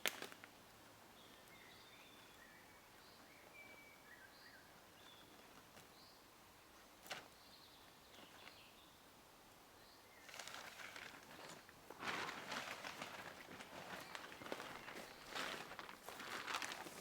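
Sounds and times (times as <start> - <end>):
faint bird chirps: 1.2 - 6.2
rustling: 10.2 - 17.0.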